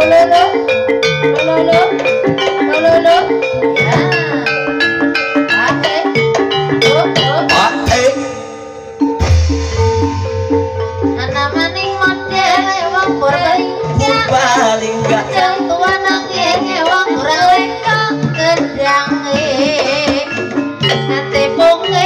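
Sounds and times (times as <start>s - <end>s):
metallophone patterns: 0.0s - 22.0s
hand drum strokes: 9.2s - 14.3s
person singing wavering melody: 10.0s - 22.0s.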